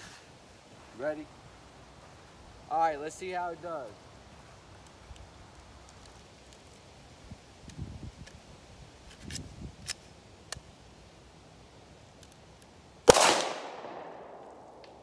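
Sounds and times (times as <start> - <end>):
pistol shot with ringing tail: 13.1 - 14.4.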